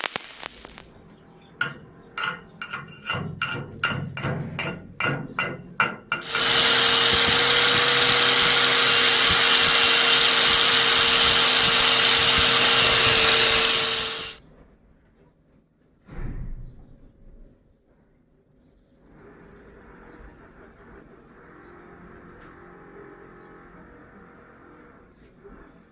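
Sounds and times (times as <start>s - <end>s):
hammer strikes: 1.6s - 14.4s
angle grinder whine: 5.9s - 14.4s.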